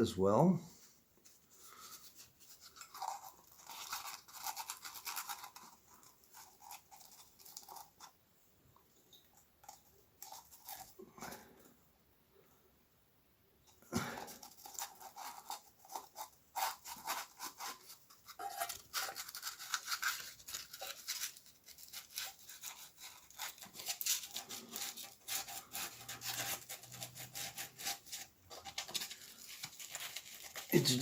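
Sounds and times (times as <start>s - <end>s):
sandpaper scraping metal valve: 18.4s - 28.3s.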